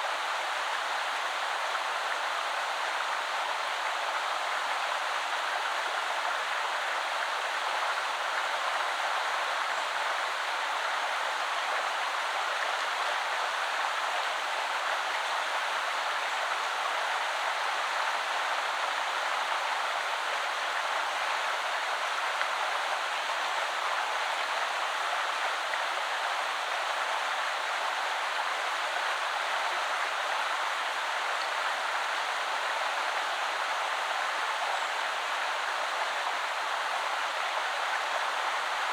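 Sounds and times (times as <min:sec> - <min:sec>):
river flowing: 0:13.6 - 0:38.9.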